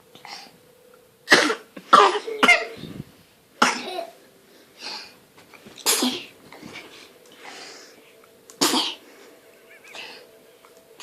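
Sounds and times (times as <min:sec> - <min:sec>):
baby sneezing: 0:01.3 - 0:02.8, 0:05.8 - 0:06.3.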